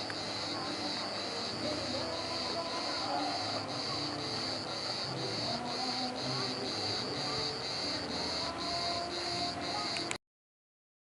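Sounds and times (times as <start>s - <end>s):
faint murmur: 0.0s - 10.2s
insects singing: 0.0s - 10.2s.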